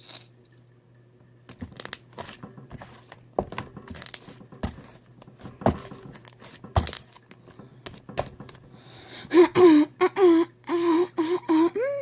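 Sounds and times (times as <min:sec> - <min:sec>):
person humming: 0:09.3 - 0:12.0.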